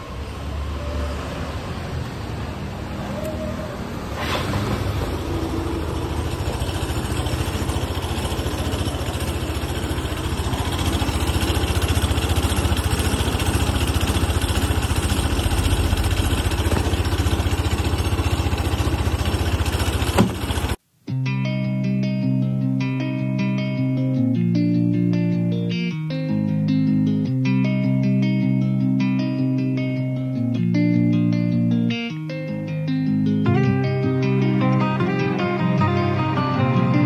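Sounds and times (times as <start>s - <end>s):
scooter engine running with abnormal noise: 0.0s - 20.8s.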